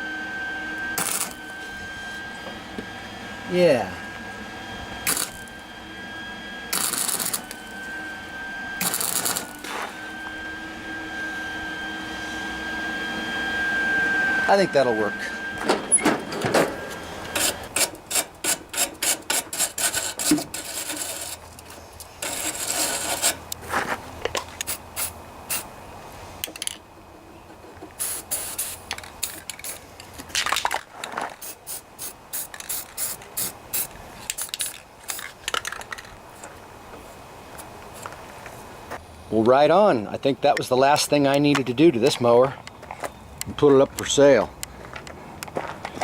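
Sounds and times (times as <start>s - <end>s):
tools scraping metal: 6.7s - 7.7s, 8.8s - 10.0s, 15.2s - 23.6s.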